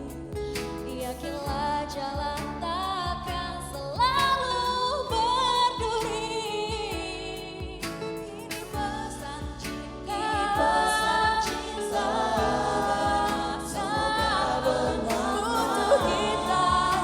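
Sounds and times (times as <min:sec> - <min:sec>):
steady drum beat: 0:00.0 - 0:04.5, 0:05.1 - 0:17.0
person singing: 0:06.0 - 0:17.0.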